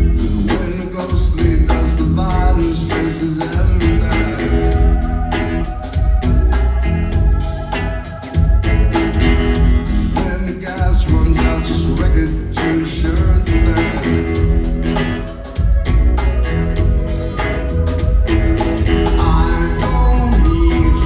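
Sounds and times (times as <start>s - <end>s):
live band playing: 0.0s - 21.0s
loud bass: 0.0s - 21.0s.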